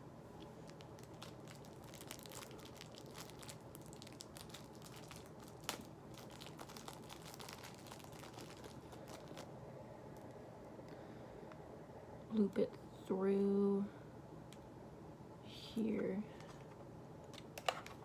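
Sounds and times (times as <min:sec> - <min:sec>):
packaging crinkling and rustling: 0:00.4 - 0:10.4.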